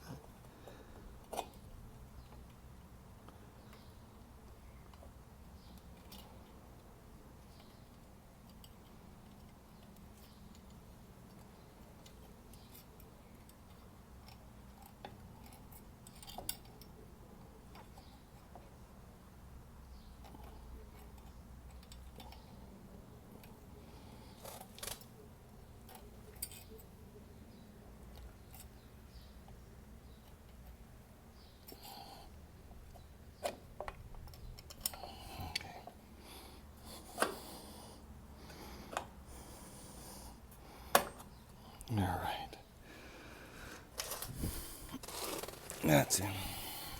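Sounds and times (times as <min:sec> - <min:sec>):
small metallic clicks: 0:32.9 - 0:35.7.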